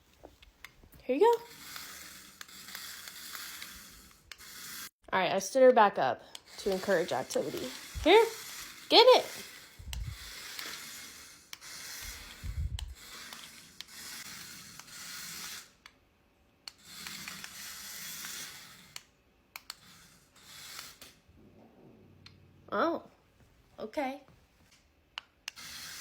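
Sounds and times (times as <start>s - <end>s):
toy mouse scraping whir: 0.7s - 5.0s, 6.3s - 16.0s, 16.6s - 21.3s, 25.4s - 26.0s.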